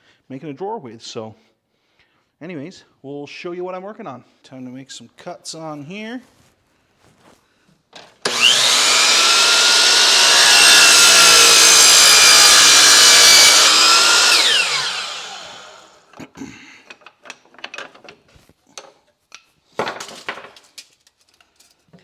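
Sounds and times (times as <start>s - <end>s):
saw blade winding down: 8.2s - 16.0s
table saw cutting wood: 8.2s - 16.0s.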